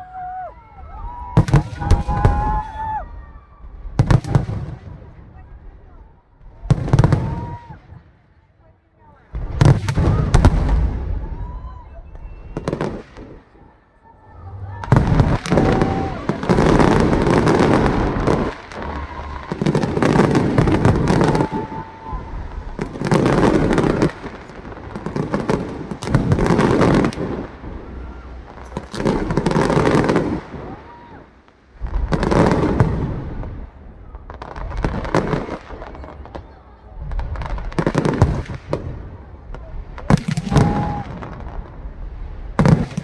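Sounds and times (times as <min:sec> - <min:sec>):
firework whistling: 0:00.0 - 0:04.6, 0:09.5 - 0:36.4, 0:40.0 - 0:41.6
firework crackling: 0:00.0 - 0:08.0, 0:09.2 - 0:43.0
firework bursts: 0:09.2 - 0:43.0.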